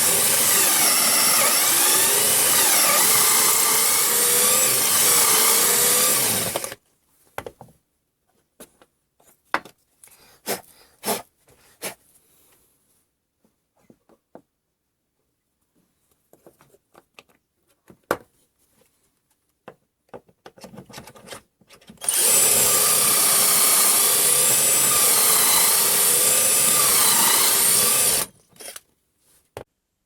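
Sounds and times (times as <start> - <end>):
power drill boring into wood: 0.0 - 6.8, 22.0 - 28.8.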